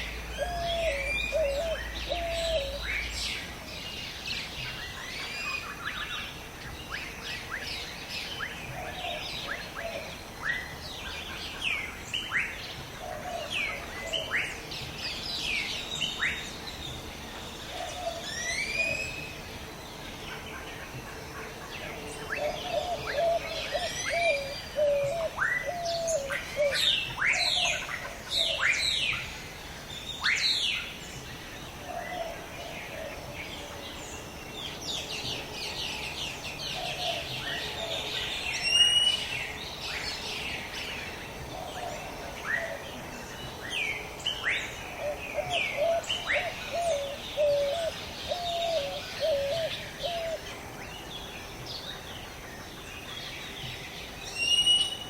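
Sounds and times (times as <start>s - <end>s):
steady background hiss: 0.0s - 55.0s
low wavering bird call: 0.4s - 3.0s, 17.8s - 19.4s, 45.0s - 50.4s
loud bird whistle: 54.3s - 55.0s.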